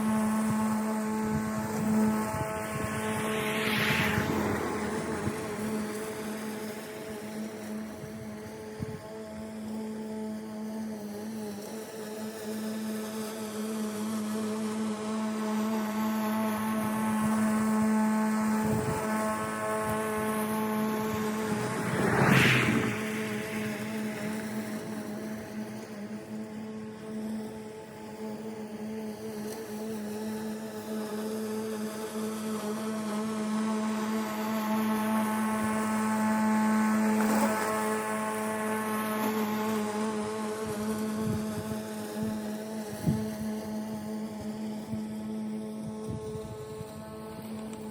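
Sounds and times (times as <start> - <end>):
lawn machine motor humming: 0.0 - 3.5, 4.3 - 47.9
low rumbling: 1.1 - 9.2, 18.6 - 27.1.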